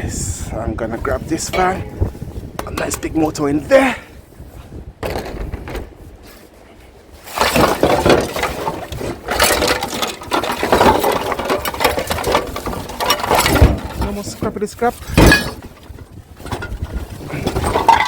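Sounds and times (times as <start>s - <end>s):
scrap metal clattering: 1.3s - 3.2s, 7.1s - 18.0s.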